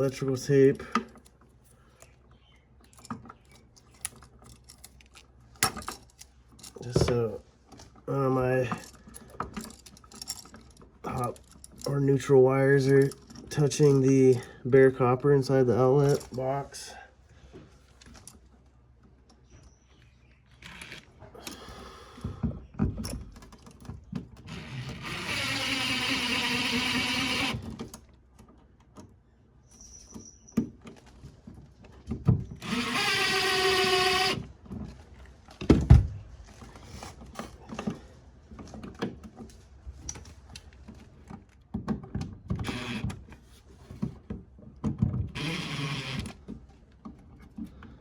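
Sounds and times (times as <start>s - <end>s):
handling clicks and rustles: 0.1s - 14.5s, 15.8s - 16.7s
power drill spinning up: 24.5s - 27.7s, 32.6s - 34.5s, 42.6s - 43.1s, 45.3s - 46.4s.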